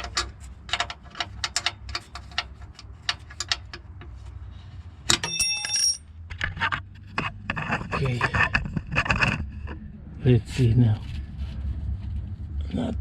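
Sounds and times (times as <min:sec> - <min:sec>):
light clicks and knocks on metal: 0:00.0 - 0:04.2
metallic clink ringing: 0:05.2 - 0:06.1.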